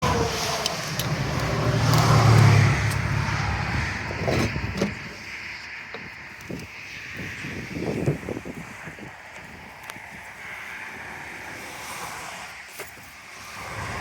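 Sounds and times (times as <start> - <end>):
vehicle passing by: 0.0 - 5.0, 13.4 - 14.0.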